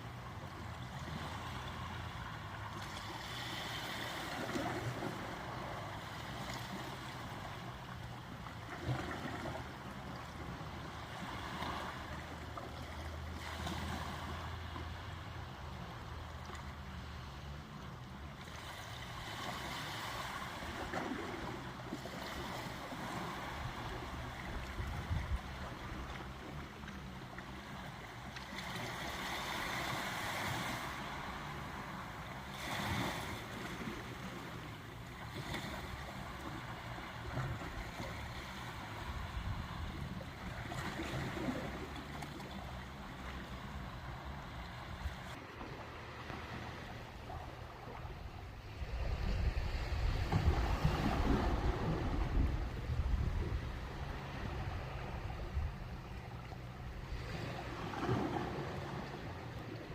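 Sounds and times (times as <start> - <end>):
ocean waves washing in: 0.0 - 59.9
steady low rumble: 33.6 - 59.9.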